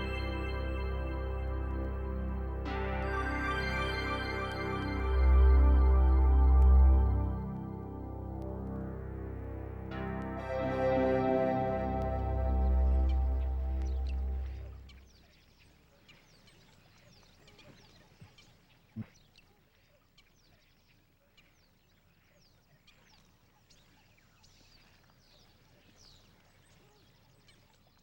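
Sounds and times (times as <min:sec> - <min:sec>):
background music: 0:00.0 - 0:15.0.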